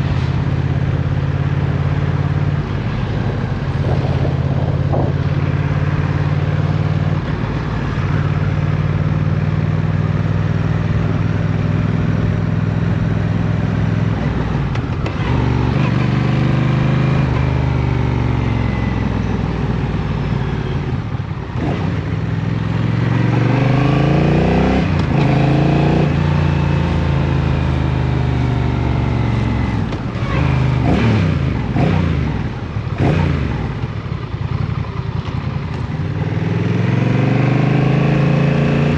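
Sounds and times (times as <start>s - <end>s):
motorcycle engine under way: 0.0s - 38.9s.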